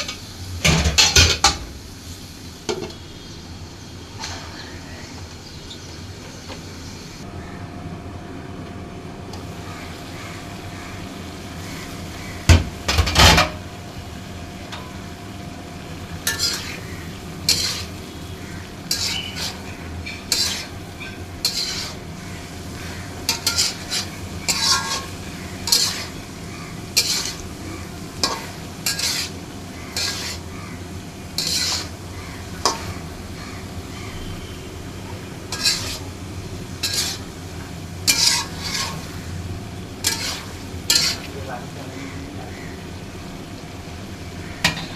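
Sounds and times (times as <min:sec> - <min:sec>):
frying sizzle: 0:00.0 - 0:44.9
spatula scraping pan: 0:16.2 - 0:26.2, 0:26.9 - 0:30.6, 0:31.3 - 0:33.1, 0:35.5 - 0:36.1, 0:36.8 - 0:39.3, 0:40.0 - 0:41.4.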